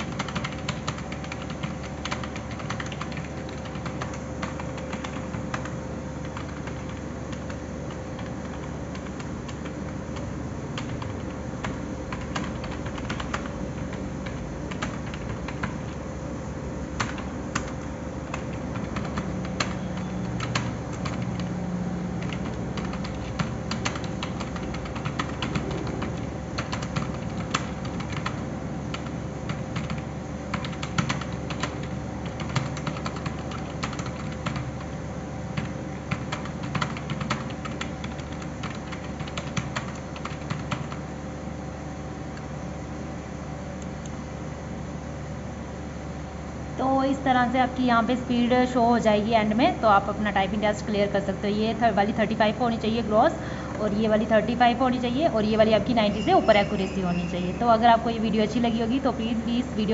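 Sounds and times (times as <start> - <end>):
keyboard typing clicks: 0.0 - 16.0, 17.0 - 41.0
steady low hum: 0.0 - 59.9.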